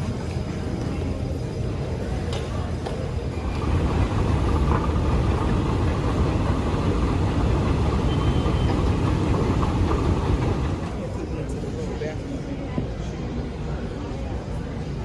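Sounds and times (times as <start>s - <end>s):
jet engine rumble inside cabin: 3.4s - 11.0s.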